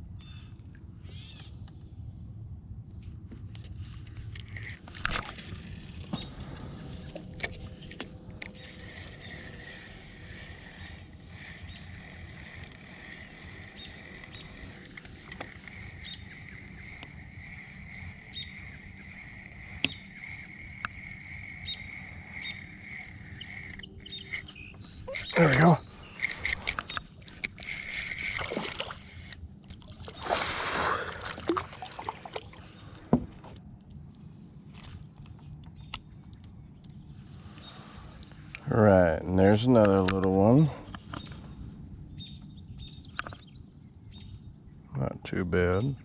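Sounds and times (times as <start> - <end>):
low rumble of wind or water: 0.0 - 46.0
insect buzz: 8.6 - 29.2
faint bird chirps: 15.7 - 27.1.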